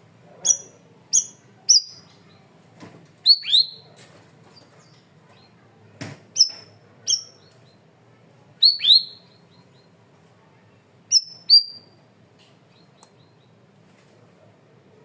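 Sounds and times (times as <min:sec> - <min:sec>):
songbird whistled calls: 0:00.4 - 0:02.1, 0:03.2 - 0:03.8, 0:06.4 - 0:07.5, 0:08.6 - 0:09.9, 0:11.1 - 0:12.0.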